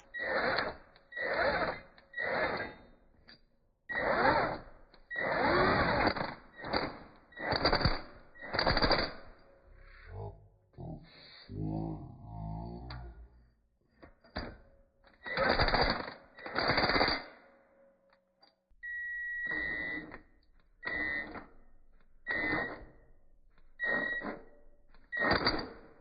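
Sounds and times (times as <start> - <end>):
power tool bursts: 0.0 - 3.0, 3.9 - 9.4, 15.2 - 17.4, 20.8 - 21.6, 22.2 - 23.0, 23.8 - 24.4, 25.1 - 26.0.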